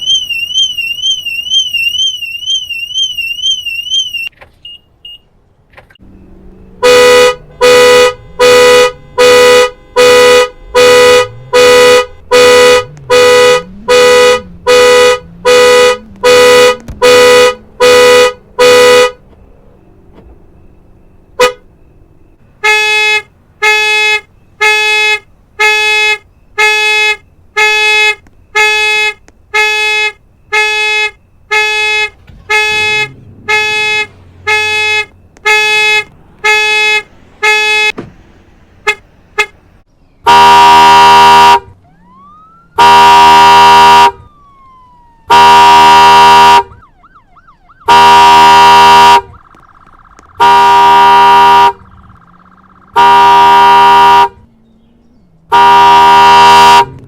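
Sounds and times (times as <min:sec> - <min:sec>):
faint warbling electronic siren: 0:06.0 - 0:22.6, 0:40.3 - 0:50.4, 0:51.8 - 0:53.0
car horn beeping in pulses: 0:06.0 - 0:38.0, 0:40.2 - 0:41.8, 0:42.8 - 0:44.2, 0:45.3 - 0:46.8, 0:47.8 - 0:49.4, 0:50.3 - 0:52.2, 0:52.9 - 0:54.5, 0:55.4 - 0:57.0
car horn long blasts: 0:06.7 - 0:19.2, 0:21.4 - 0:21.6, 0:22.5 - 0:38.0, 0:40.2 - 0:41.7, 0:42.8 - 0:44.2, 0:45.3 - 0:46.7, 0:47.8 - 0:49.3, 0:50.4 - 0:51.8, 0:52.9 - 0:54.4, 0:55.5 - 0:57.0.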